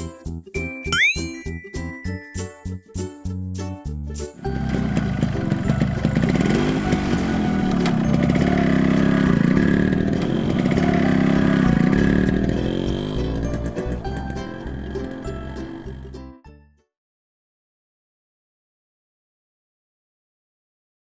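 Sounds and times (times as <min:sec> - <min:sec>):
motorcycle engine revving: 0:04.4 - 0:16.2.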